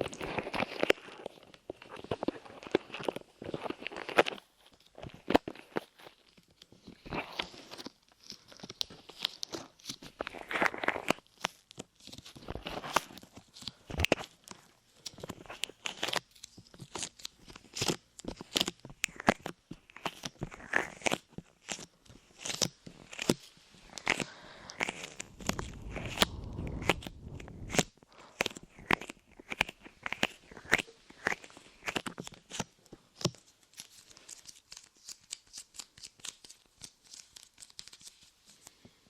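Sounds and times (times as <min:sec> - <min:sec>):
clay crackling on microphone: 0:22.4 - 0:28.2.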